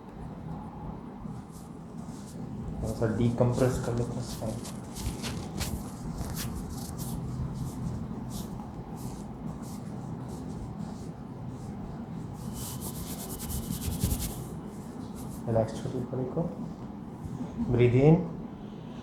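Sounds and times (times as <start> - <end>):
steady low hum: 0.0 - 19.0
hands rubbing on clothing: 1.4 - 15.6.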